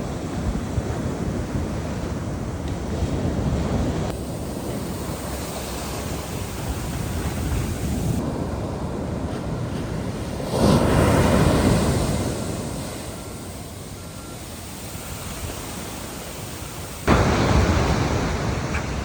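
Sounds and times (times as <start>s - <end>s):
ocean surf washing on beach: 0.0s - 19.0s
wind buffeting microphone: 0.0s - 19.0s.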